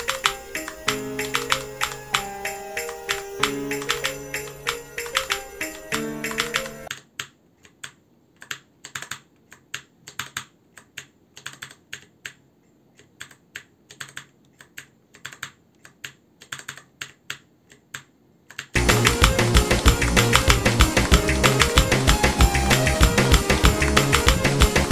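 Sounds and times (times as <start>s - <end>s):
music: 0.0s - 6.9s, 18.8s - 24.9s
mechanical keyboard key clicks: 0.0s - 12.4s, 13.0s - 19.2s.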